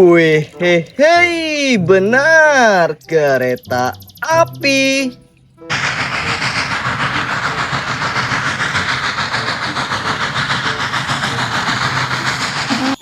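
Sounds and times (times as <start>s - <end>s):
steam train chugging: 0.0s - 13.0s.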